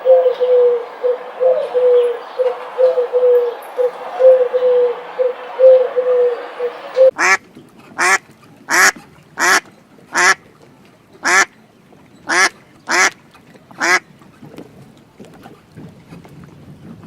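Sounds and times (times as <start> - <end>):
duck quacking: 0.0 - 7.4, 8.0 - 10.4, 11.2 - 11.5, 12.3 - 13.2, 13.8 - 14.0.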